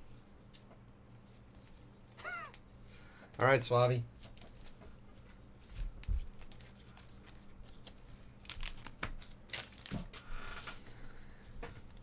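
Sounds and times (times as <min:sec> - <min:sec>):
card pack wrapper crinkling and tearing: 0:06.1 - 0:10.2.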